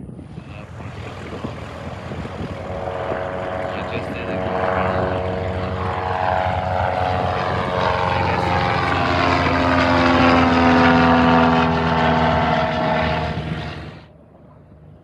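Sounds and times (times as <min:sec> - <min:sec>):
propeller plane engine droning: 0:00.0 - 0:15.0.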